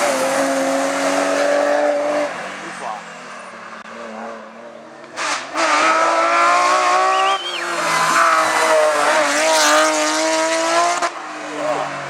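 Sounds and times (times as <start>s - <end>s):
race car engine at full throttle: 0.0s - 12.0s.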